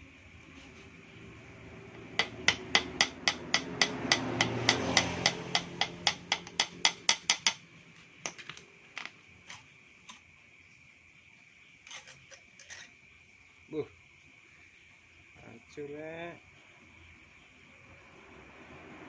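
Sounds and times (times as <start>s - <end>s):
hammer tapping on metal: 2.2s - 7.6s.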